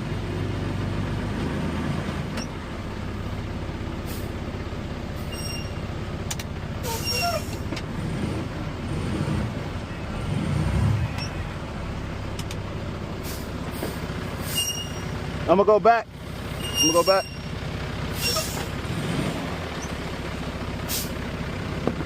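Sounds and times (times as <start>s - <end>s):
heavy diesel truck engine: 0.0s - 22.0s
air brake hisses: 4.0s - 4.4s, 13.2s - 15.0s, 18.2s - 18.7s, 20.8s - 21.2s.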